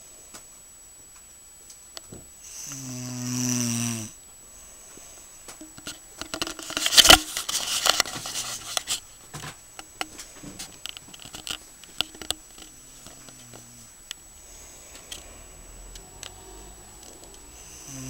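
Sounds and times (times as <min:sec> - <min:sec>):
buzzing snore: 0:02.4 - 0:04.2, 0:12.7 - 0:18.0
clicks and rustling: 0:05.5 - 0:14.2.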